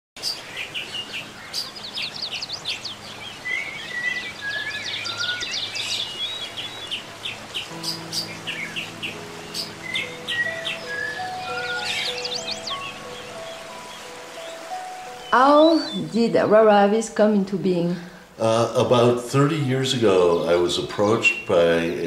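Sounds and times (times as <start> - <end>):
birds chirping and whistling: 0.2 - 16.4, 20.4 - 22.0
soft held music notes: 7.6 - 22.0.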